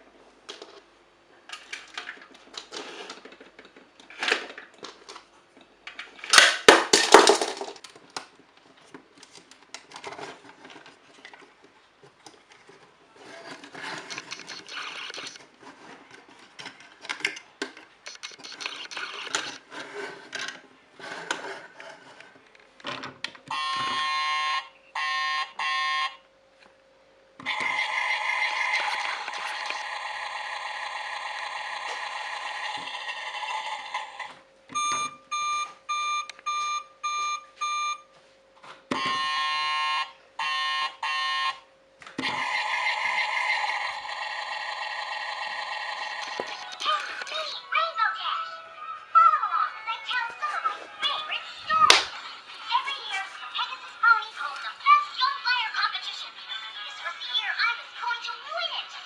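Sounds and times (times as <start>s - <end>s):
plastic toys clicking and rattling: 5.9s - 11.5s, 13.4s - 20.6s, 43.1s - 47.5s
long electronic toy sound: 23.5s - 26.2s, 27.5s - 37.9s, 39.0s - 47.7s
toy electronic alarm tones: 23.5s - 26.2s, 34.8s - 38.0s, 39.0s - 41.6s.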